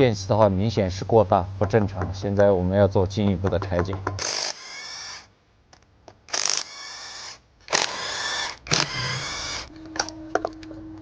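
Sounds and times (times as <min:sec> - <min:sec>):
power tool running: 0:04.2 - 0:05.2, 0:06.3 - 0:09.7.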